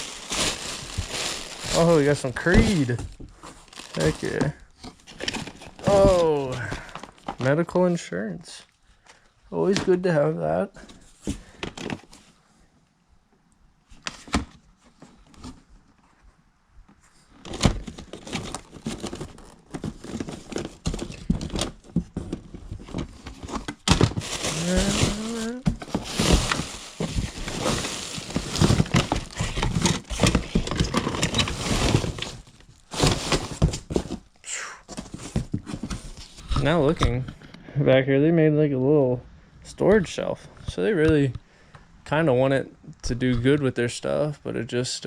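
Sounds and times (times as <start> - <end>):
boxes knocking and thudding: 0.0 - 7.5, 17.4 - 34.3, 34.9 - 37.2
bags crinkling and rustling: 0.0 - 7.7, 17.3 - 37.1.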